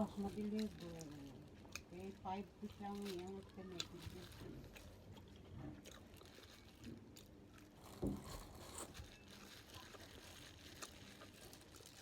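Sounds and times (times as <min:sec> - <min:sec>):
small crunches and clicks: 0:00.3 - 0:12.0.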